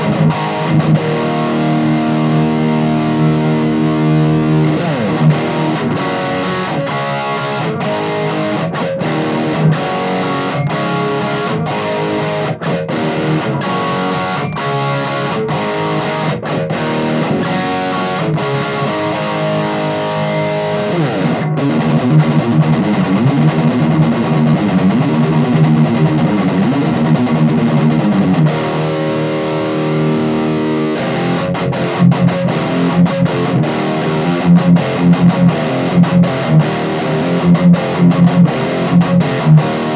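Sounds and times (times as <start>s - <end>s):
distorted electric guitar riffs: 0.0s - 39.9s.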